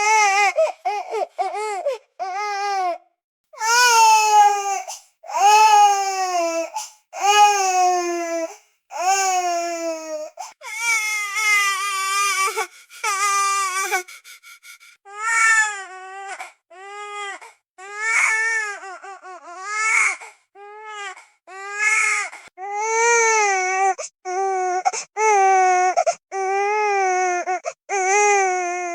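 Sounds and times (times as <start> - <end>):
baby crying: 3.6 - 14.1, 15.1 - 20.2.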